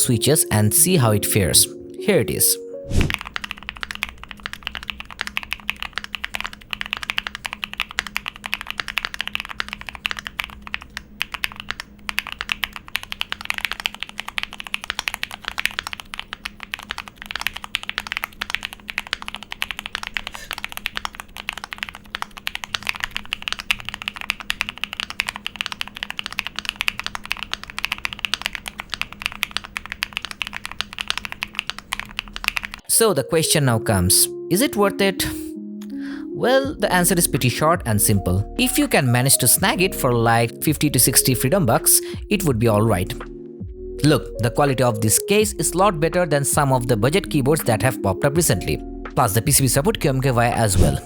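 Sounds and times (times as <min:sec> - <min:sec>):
fast mechanical keyboard typing: 0:03.0 - 0:32.8.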